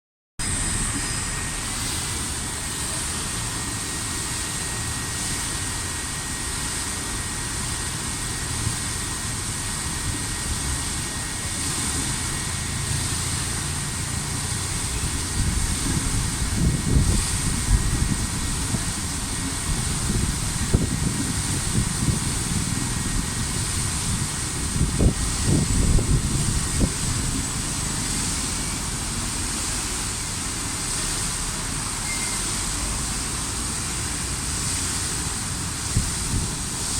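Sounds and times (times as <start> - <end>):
fountain water splashing: 0.4 - 36.9.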